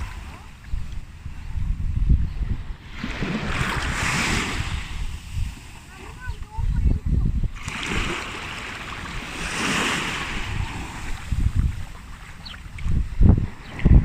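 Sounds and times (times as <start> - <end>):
wind rumbling on microphone: 0.0 - 14.0
sea waves washing onto beach: 2.8 - 6.8, 7.5 - 14.0.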